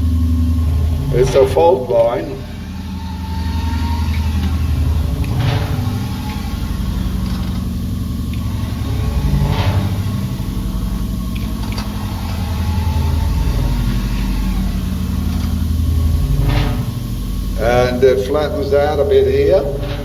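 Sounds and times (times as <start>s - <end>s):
motor droning: 0.0s - 20.0s
brief scraping noises: 3.4s - 17.8s.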